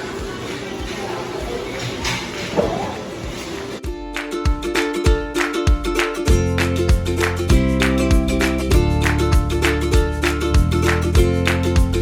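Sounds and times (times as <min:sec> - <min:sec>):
upbeat music with guitar and bass: 0:03.8 - 0:12.0.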